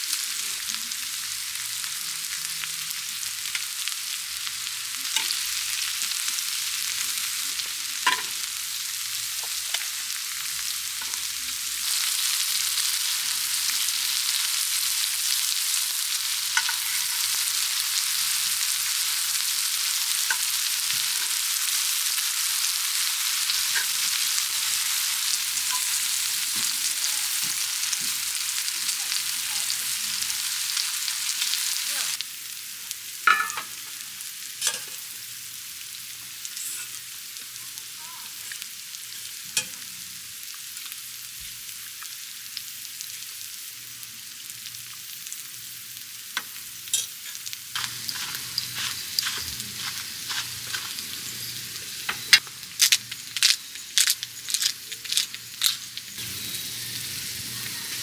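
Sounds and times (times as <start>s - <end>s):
food sizzling in a pan: 0.0s - 58.0s.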